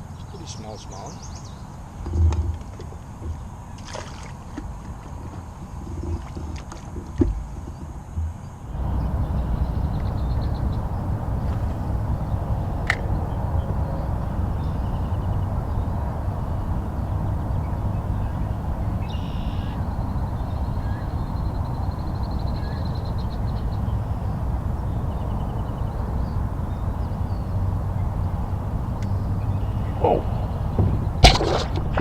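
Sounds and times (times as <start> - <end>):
low rushing outdoor noise: 8.6 - 32.0
fast ticking bird trill: 8.8 - 31.3
harsh bird call: 8.8 - 31.5.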